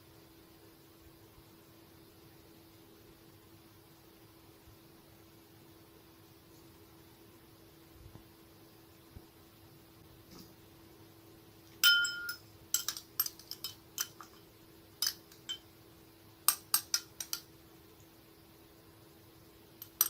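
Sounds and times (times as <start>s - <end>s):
faint steady hum: 0.0s - 20.0s
metal utensil clinking on glass: 11.8s - 15.6s, 16.5s - 17.4s.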